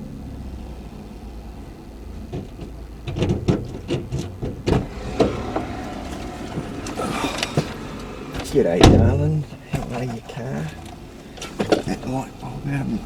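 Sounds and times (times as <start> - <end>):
car engine hum from inside: 0.0 - 13.0
sharp clicks and knocks: 2.2 - 10.0.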